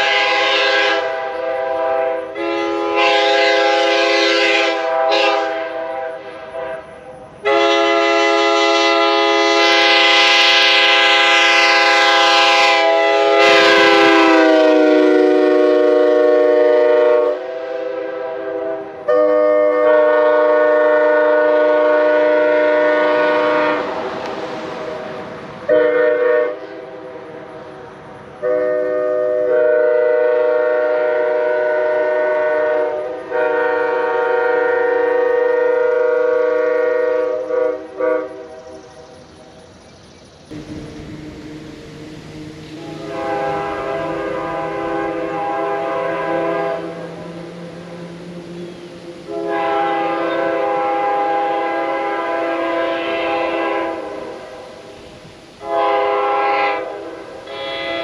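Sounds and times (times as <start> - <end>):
five-chime air horn blasts: 0.0 - 23.9, 40.5 - 54.4.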